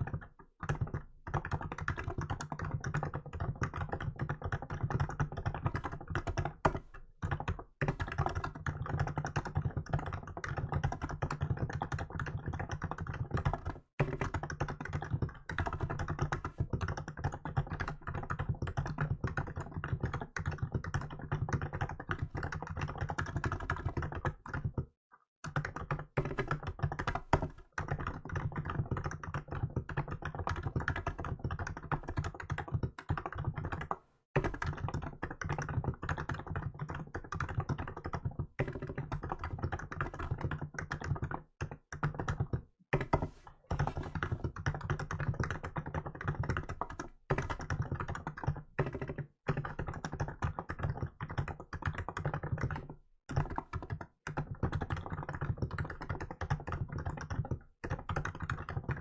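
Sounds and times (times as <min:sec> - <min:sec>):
fast keyboard typing: 0:00.0 - 0:59.0.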